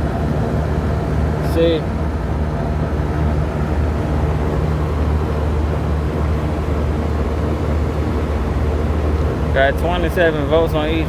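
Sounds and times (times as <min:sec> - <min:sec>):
air conditioner humming: 0:00.0 - 0:11.0.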